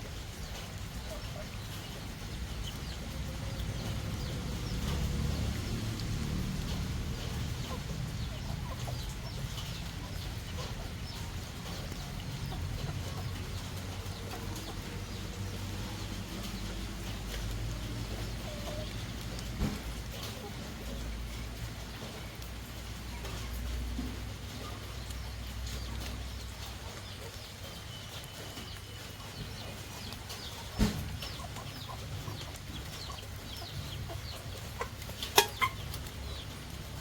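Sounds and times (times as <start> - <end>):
low steady rumble: 0.0 - 27.2
chickens clucking: 0.0 - 37.0.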